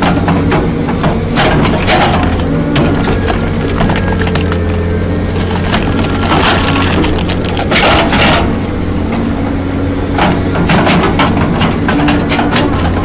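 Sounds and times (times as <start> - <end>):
machine engine droning: 0.0 - 13.0
wood cracking and splintering: 1.4 - 8.6.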